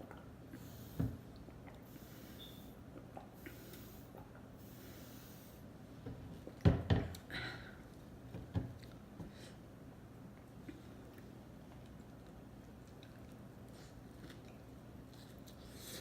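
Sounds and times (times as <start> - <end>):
soft nasal breathing: 0.5 - 1.2, 1.8 - 2.8, 3.4 - 5.7.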